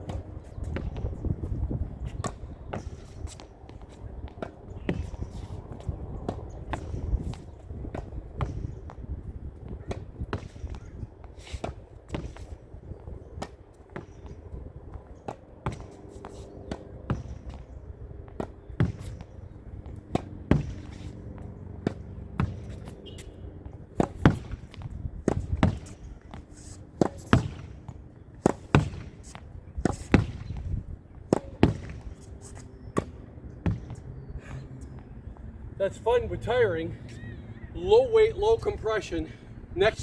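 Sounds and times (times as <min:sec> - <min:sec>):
racket striking tennis ball: 0:00.0 - 0:01.2, 0:02.1 - 0:12.6, 0:15.2 - 0:17.7, 0:18.3 - 0:34.1.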